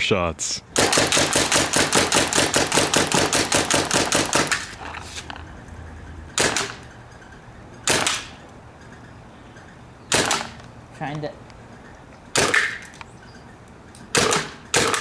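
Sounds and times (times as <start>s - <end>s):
paintball gun firing: 0.8s - 4.8s, 6.4s - 6.9s, 7.8s - 8.4s, 10.1s - 10.6s, 12.3s - 13.0s, 14.1s - 15.0s.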